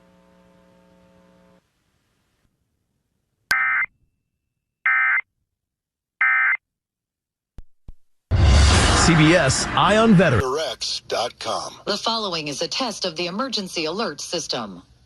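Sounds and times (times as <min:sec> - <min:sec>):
faint hum: 0:00.0 - 0:03.4.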